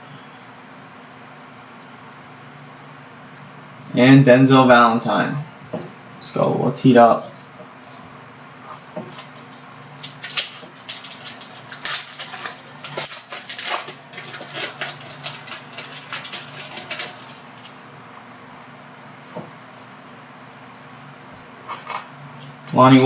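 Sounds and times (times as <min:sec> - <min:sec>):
foil wrapper crinkling: 0:09.1 - 0:17.9.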